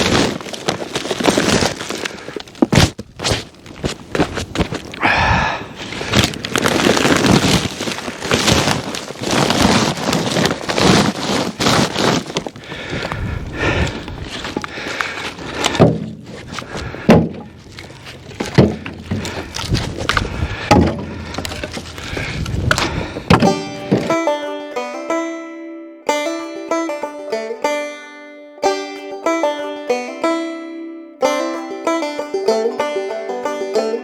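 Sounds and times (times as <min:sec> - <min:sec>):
crunching and scraping snow: 0:00.0 - 0:25.3
wooden knocks: 0:15.7 - 0:16.3, 0:17.1 - 0:19.4, 0:20.1 - 0:21.9, 0:22.7 - 0:24.2.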